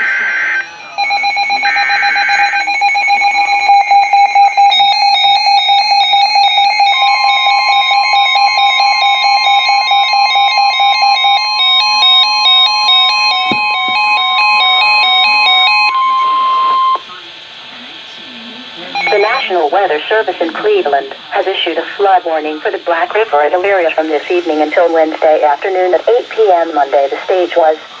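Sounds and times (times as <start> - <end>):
digital data burst: 0.0 - 3.6, 18.9 - 22.1
electronic alarm beeping: 0.0 - 17.2, 18.9 - 27.3
steady warning tone: 0.0 - 28.0.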